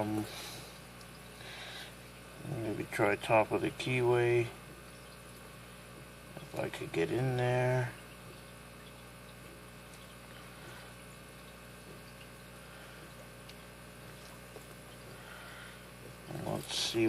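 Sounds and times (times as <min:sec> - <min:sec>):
faint electrical hum: 0:00.0 - 0:17.0.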